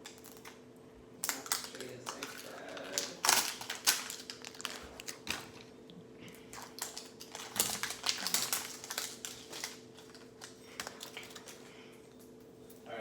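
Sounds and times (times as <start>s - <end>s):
faint steady hum: 0.0s - 13.0s
plastic packaging crinkling: 1.2s - 11.7s.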